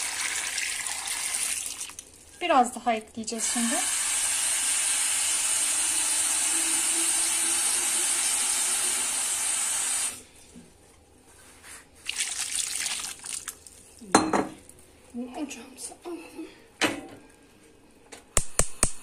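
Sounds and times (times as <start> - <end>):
tap water running into pot: 0.0 - 2.2, 3.4 - 10.2, 12.1 - 13.8.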